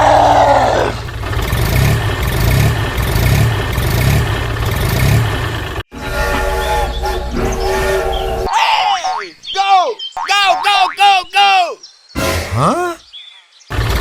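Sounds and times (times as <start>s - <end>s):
vehicle engine idling: 0.1s - 5.8s.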